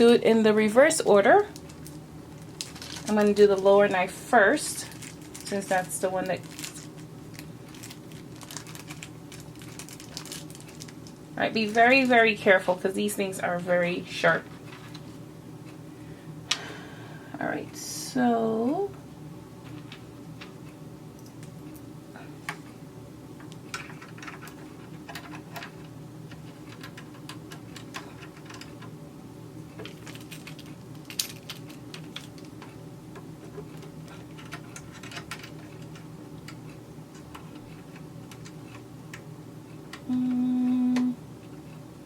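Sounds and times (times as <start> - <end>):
steady low hum: 0.0 - 42.0
metal parts clicking: 29.8 - 32.5.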